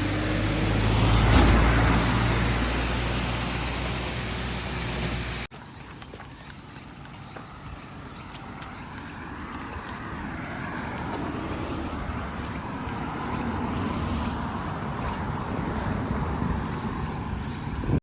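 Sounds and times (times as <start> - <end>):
vehicle running: 0.0 - 18.0.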